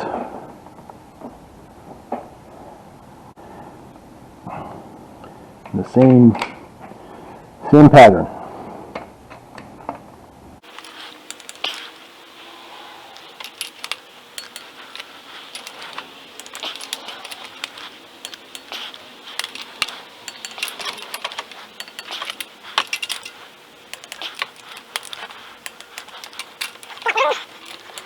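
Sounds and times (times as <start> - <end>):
torque wrench ratcheting clicks: 10.6 - 12.1, 13.2 - 28.0.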